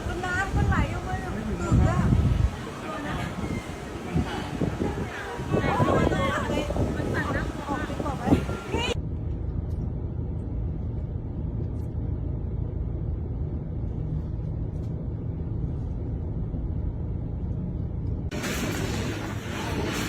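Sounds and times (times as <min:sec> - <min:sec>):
low rumble: 0:08.8 - 0:20.0.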